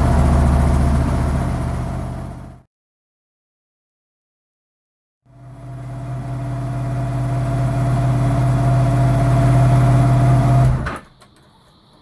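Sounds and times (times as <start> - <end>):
motorcycle engine idling: 0.0 - 2.6.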